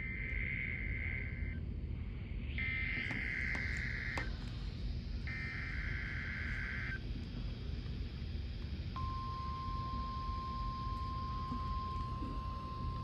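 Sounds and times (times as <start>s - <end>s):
radio hiss: 1.0s - 8.8s.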